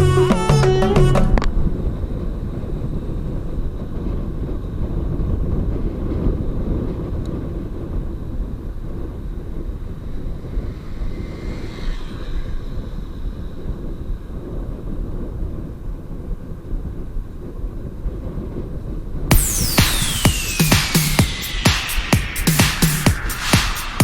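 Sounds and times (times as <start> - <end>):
wind rumble on microphone: 1.0 - 19.3
road noise: 9.7 - 14.4.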